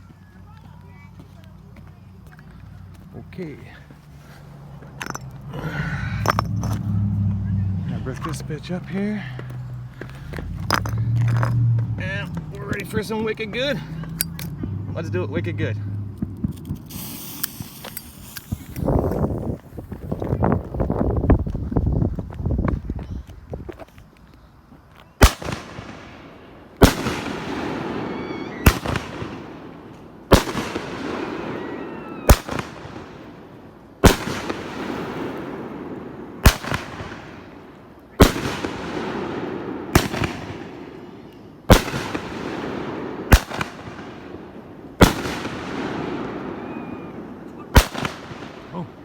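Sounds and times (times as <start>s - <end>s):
fireworks bangs: 4.4s - 13.8s, 14.6s - 21.6s, 25.2s - 49.0s
fireworks whistles: 16.5s - 20.3s, 25.2s - 49.0s.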